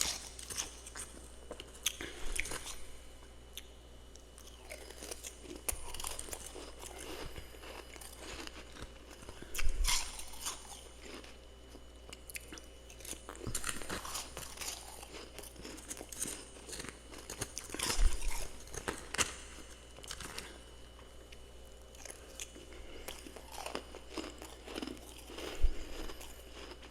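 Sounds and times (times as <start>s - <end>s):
chewing crunchy frost: 0.0s - 26.9s.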